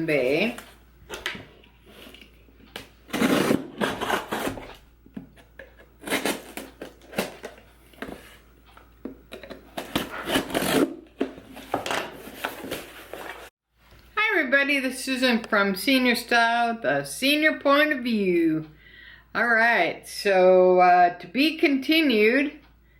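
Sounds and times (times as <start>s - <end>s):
packaging rustling and tearing: 6.0s - 8.4s, 9.7s - 13.5s.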